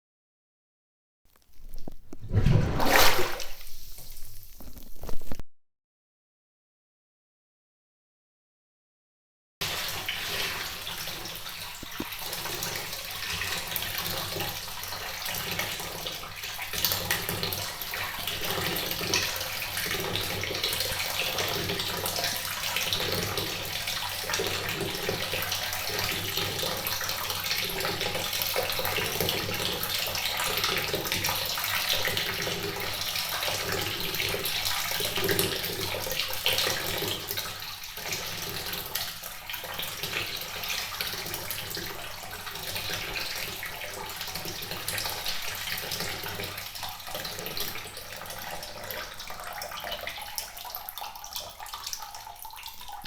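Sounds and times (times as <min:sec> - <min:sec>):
running water rushing: 0:01.3 - 0:05.4.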